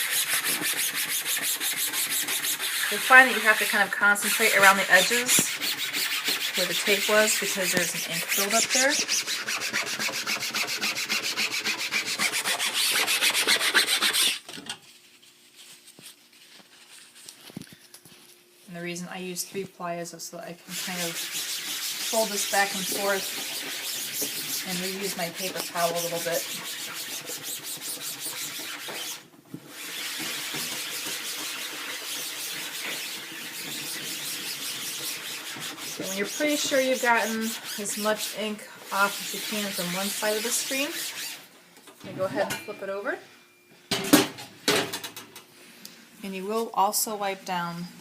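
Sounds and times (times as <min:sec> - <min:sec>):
paper towel scrubbing mesh screen: 0:00.0 - 0:17.5, 0:20.6 - 0:41.5
faint handling sounds: 0:14.8 - 0:18.8.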